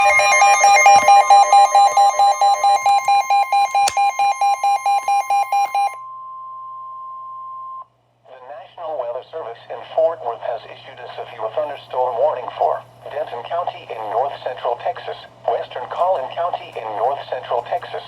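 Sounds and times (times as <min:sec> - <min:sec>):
steady alert tone: 0:00.0 - 0:06.0
buzzy alarm beeping: 0:00.0 - 0:06.1.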